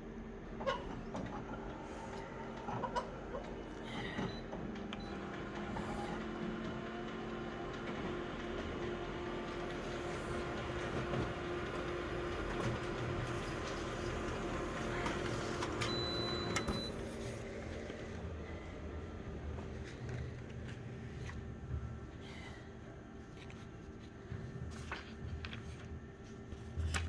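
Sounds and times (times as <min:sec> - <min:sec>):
scanner motor hum: 0:00.5 - 0:22.1
scanner carriage whirring: 0:00.8 - 0:19.6.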